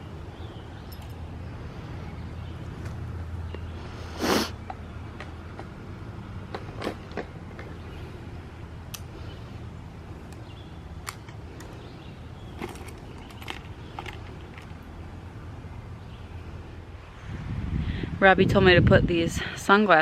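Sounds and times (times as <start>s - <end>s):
wind on microphone: 16.9s - 19.7s.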